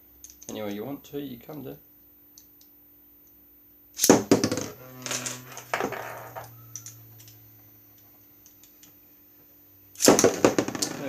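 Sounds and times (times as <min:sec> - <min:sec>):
spinning tops humming: 0:04.0 - 0:09.2.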